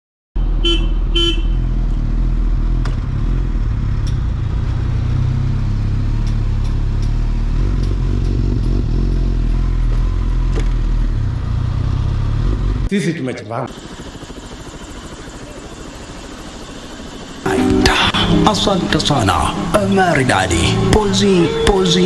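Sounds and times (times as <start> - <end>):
horn toots: 0.4 - 1.8
motorcycle engine running: 0.4 - 12.9.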